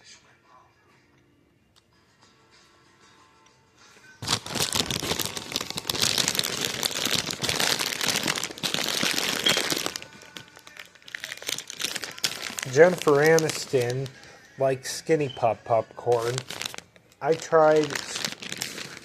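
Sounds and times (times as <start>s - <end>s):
plastic bag crinkling: 4.2s - 14.3s, 16.0s - 19.0s.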